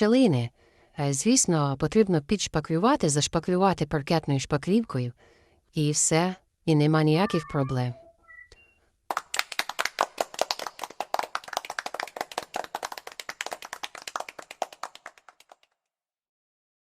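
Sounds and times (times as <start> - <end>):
small group clapping: 9.1 - 15.8.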